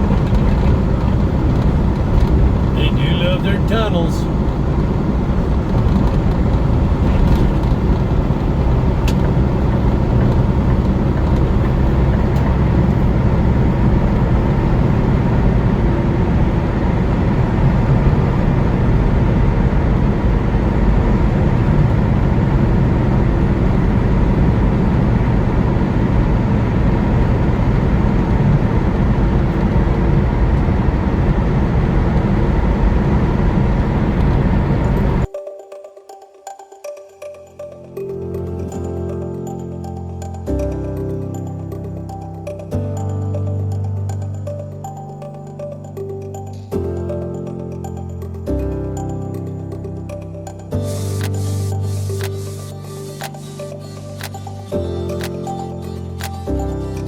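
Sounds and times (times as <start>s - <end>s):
road noise: 0.0s - 35.3s, 49.8s - 57.0s
vehicle engine on highway: 0.0s - 35.3s.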